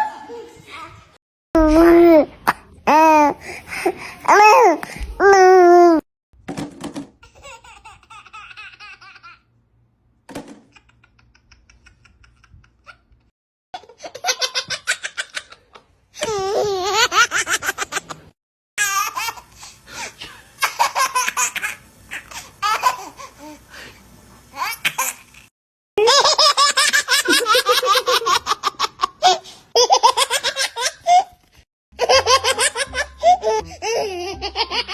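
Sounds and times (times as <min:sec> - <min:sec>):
babies laughing: 0:07.2 - 0:09.4, 0:10.7 - 0:13.2, 0:13.8 - 0:19.6, 0:20.6 - 0:23.3, 0:26.0 - 0:31.4, 0:32.0 - 0:34.9.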